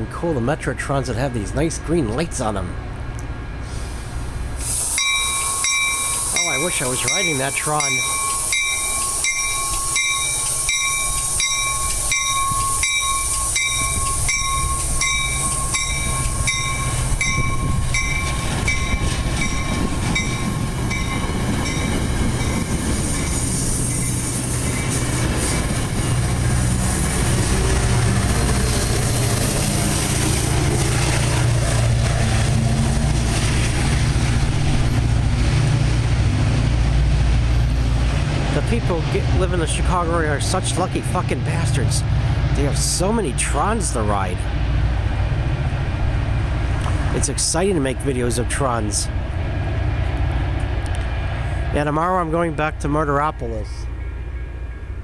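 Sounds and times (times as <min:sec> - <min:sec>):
train rumble: 0:00.0 - 0:55.0
train bell ringing: 0:05.0 - 0:25.7.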